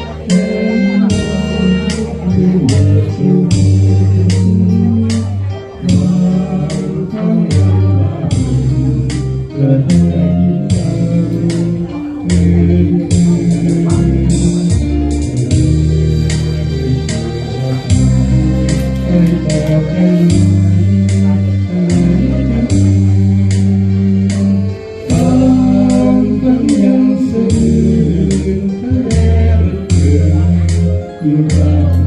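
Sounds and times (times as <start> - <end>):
sustained bass notes: 0.0 - 32.0
drum and cymbal beat: 10.7 - 21.2.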